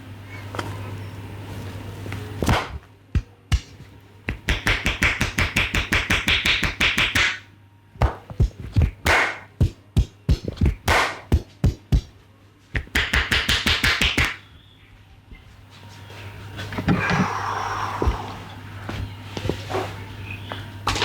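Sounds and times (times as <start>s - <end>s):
steady low hum: 0.0s - 21.0s
rapid hand strikes: 2.4s - 12.2s, 12.8s - 14.4s
hands slapping skin: 2.5s - 7.4s, 8.0s - 12.1s, 12.8s - 14.4s.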